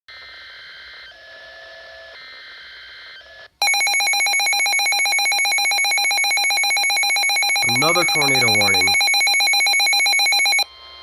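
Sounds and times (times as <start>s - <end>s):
electronic alert tones: 6.6s - 10.6s.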